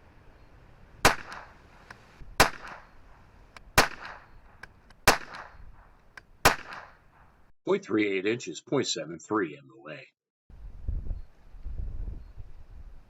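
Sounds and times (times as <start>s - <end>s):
rifle shots: 1.0s - 7.5s.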